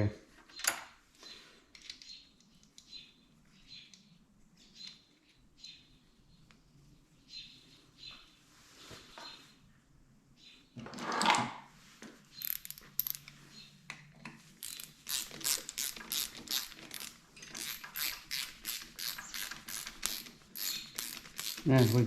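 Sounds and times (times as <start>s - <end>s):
ratchet wrench clicking: 12.4s - 13.2s, 14.6s - 22.0s.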